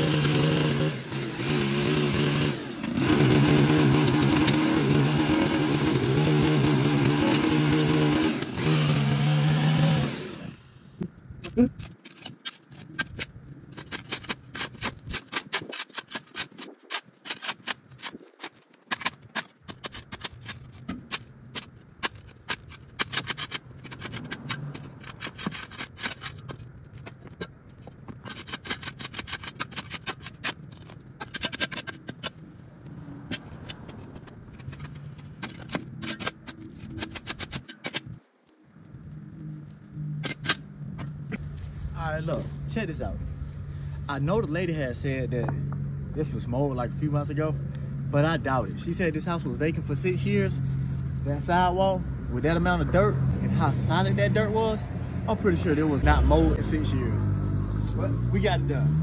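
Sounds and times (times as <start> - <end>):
tool scraping soil off concrete: 0.0 - 10.8, 11.5 - 32.4, 33.3 - 38.2.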